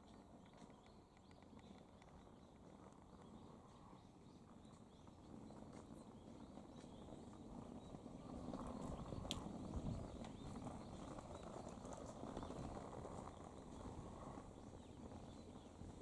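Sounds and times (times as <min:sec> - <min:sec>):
faint outdoor rumble: 0:00.0 - 0:16.0
soft ticks: 0:09.3 - 0:09.5.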